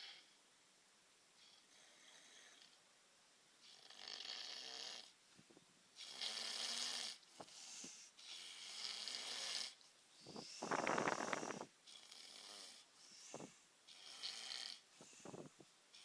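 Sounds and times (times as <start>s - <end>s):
faint snoring: 3.6s - 5.2s, 6.0s - 16.0s.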